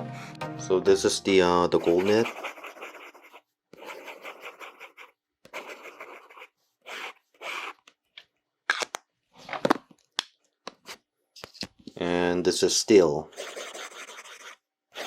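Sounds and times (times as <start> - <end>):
fountain pen scratching on paper: 1.7 - 7.8, 13.3 - 15.0.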